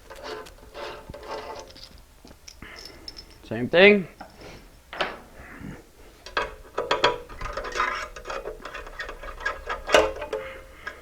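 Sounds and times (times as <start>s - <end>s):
metal tool clicks and clinks: 1.6s - 3.5s.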